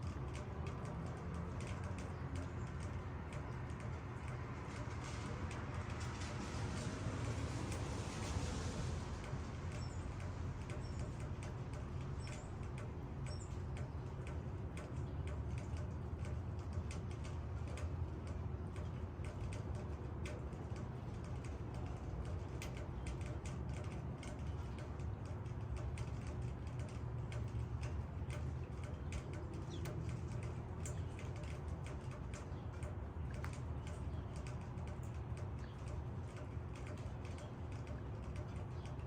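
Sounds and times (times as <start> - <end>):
drops ticking: 0.0 - 6.1, 9.2 - 39.0
rain falling on leaves: 0.1 - 13.0.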